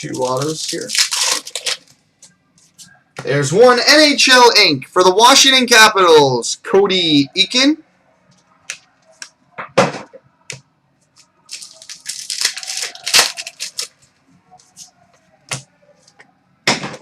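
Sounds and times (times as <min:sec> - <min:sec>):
card rustling: 0:00.0 - 0:02.9, 0:11.0 - 0:15.0.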